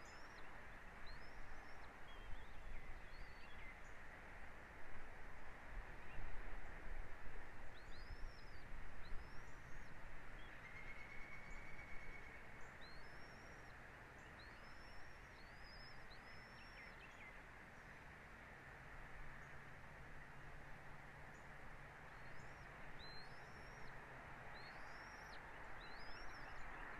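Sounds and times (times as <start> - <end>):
bird chirping: 22.1 - 24.0, 24.6 - 26.9.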